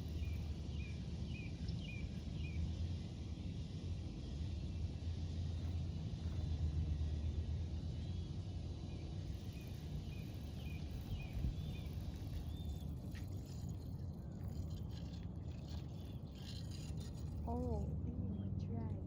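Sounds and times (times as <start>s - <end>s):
small bird chirping: 7.9s - 18.7s
wind rumbling on microphone: 9.8s - 19.0s.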